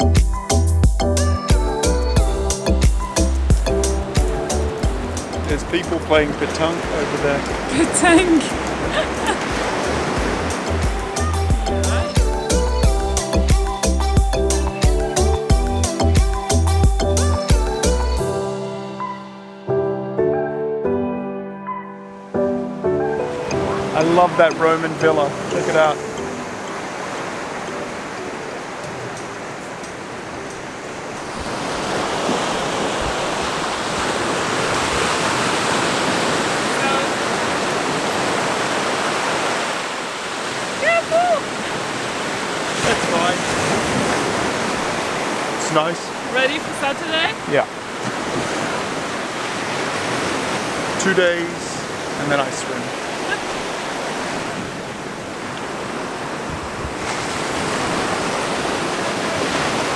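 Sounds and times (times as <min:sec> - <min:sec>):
small waves washing onto shore: 0:02.8 - 0:13.8, 0:23.3 - 0:59.9
wind rumble on microphone: 0:54.4 - 0:59.9.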